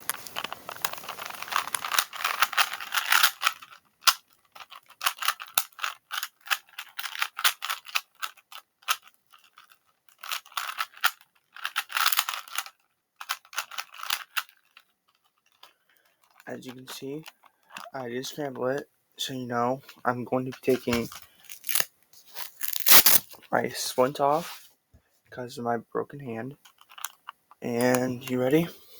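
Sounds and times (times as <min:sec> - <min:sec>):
puzzle cube plastic clicking: 0:00.1 - 0:16.5, 0:20.6 - 0:23.2, 0:26.6 - 0:28.3.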